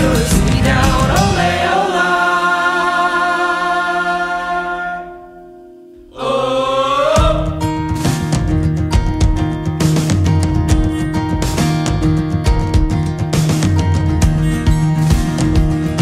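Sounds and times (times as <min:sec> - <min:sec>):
band music with percussive strikes: 0:00.0 - 0:01.6, 0:07.2 - 0:16.0
sung note with vibrato: 0:04.3 - 0:06.2.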